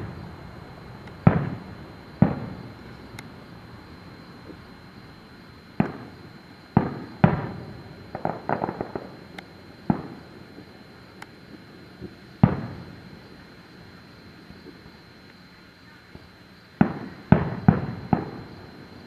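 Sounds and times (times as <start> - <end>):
fireworks booming: 0.0 - 4.7, 5.7 - 15.0, 16.1 - 19.0
crackling firework pops: 1.0 - 3.4, 5.8 - 13.1, 16.1 - 19.0.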